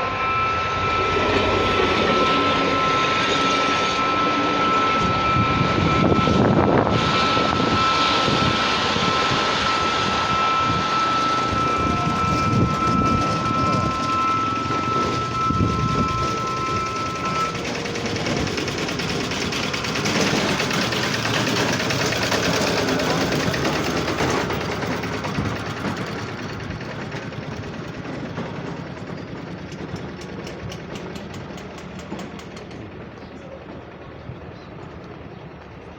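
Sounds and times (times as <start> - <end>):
two-tone train horn: 0.0 - 20.8
train rumble: 0.0 - 35.9.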